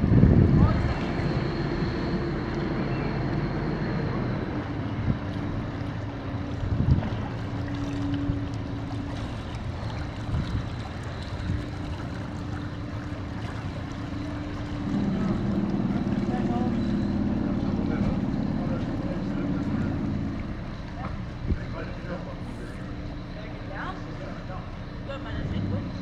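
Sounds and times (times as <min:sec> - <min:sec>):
wind on microphone: 0:00.0 - 0:13.8
ship diesel engine droning: 0:00.0 - 0:26.0.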